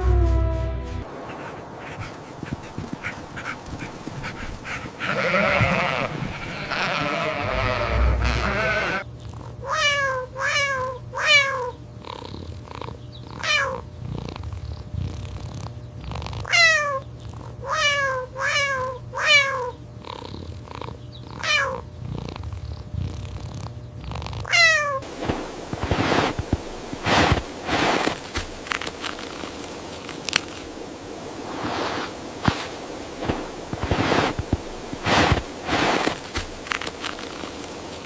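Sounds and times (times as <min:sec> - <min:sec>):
crackling rustle: 0:01.0 - 0:09.5, 0:22.1 - 0:38.0
animal high calls: 0:01.2 - 0:09.0
steady low hum: 0:25.0 - 0:38.0.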